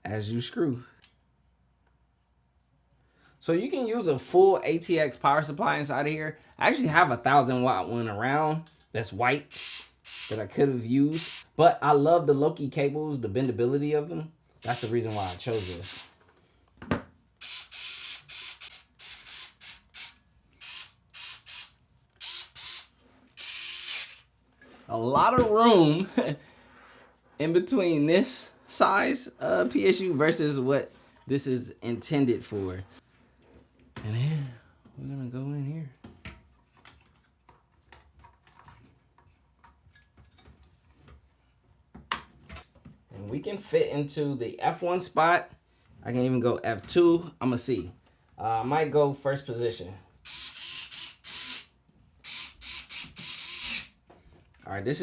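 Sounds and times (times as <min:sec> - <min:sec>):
mechanical rasping whirring bursts: 0:17.4 - 0:24.3, 0:50.3 - 0:51.7.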